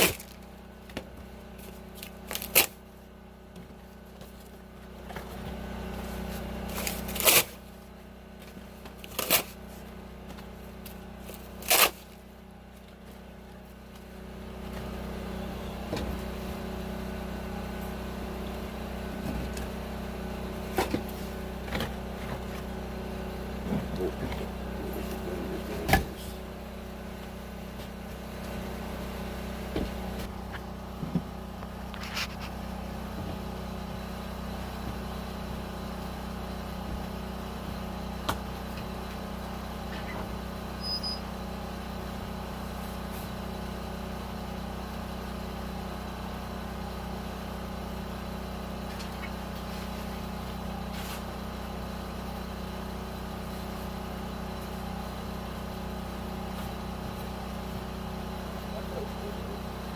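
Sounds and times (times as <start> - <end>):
low mechanical hum: 0.0 - 59.9.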